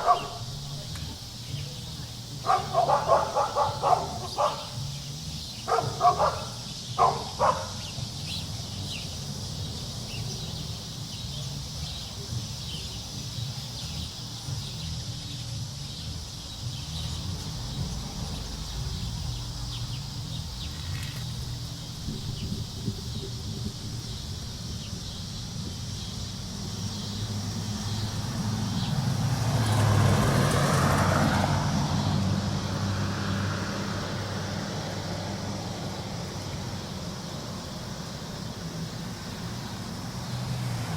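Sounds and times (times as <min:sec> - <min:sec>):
dog barking: 0:00.0 - 0:00.5, 0:02.4 - 0:04.8, 0:05.6 - 0:07.9.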